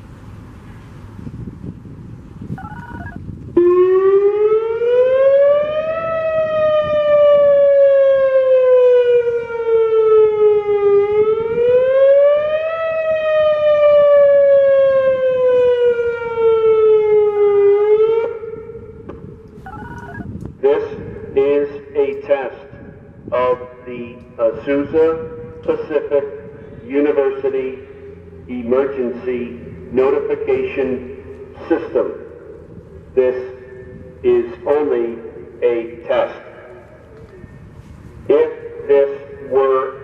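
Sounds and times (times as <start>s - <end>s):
outdoor warning siren wailing: 2.5s - 20.4s.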